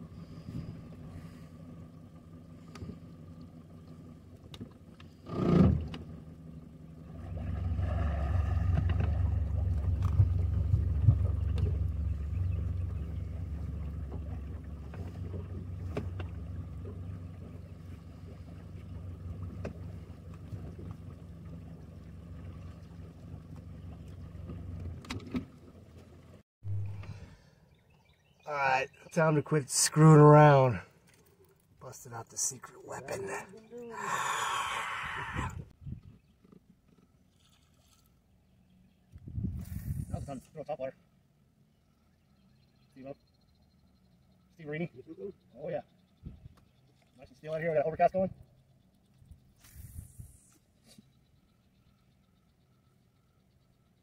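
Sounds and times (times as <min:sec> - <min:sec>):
boat motor humming: 0:00.0 - 0:40.0, 0:40.9 - 0:54.0
low rumble: 0:07.0 - 0:25.0, 0:26.6 - 0:27.5.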